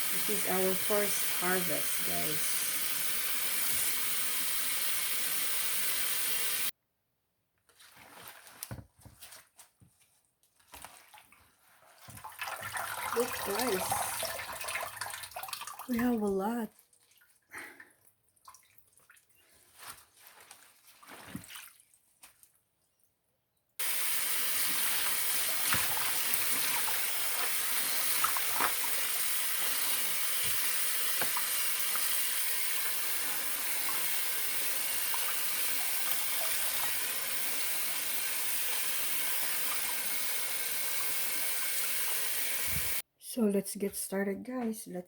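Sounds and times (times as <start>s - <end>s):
tap water running into sink: 0.0s - 6.7s, 12.1s - 15.9s, 23.8s - 43.0s
faint handling sounds: 19.4s - 21.6s.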